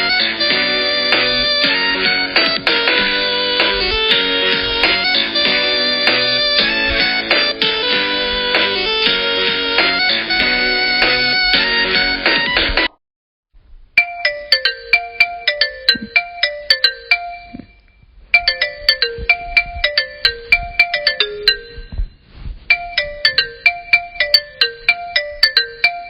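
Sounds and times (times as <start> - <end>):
phone ringtone melody: 0.0 - 12.0, 14.0 - 26.0.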